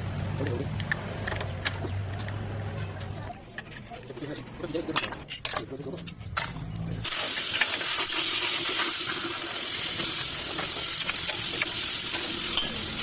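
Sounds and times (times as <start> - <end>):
loud steady hiss: 7.0 - 13.0.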